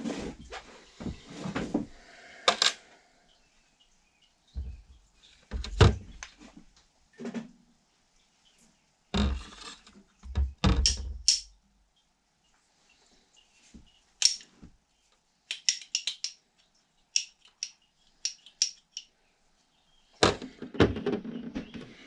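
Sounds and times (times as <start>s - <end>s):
objects knocking and clunking: 4.5s - 6.6s, 9.1s - 11.5s, 20.2s - 22.0s.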